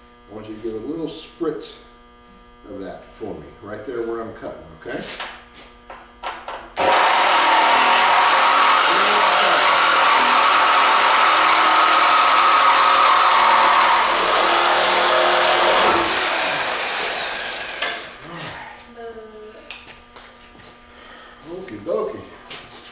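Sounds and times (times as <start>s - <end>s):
grinding on steel: 6.8s - 18.4s
power cutting tool whining: 6.8s - 18.6s.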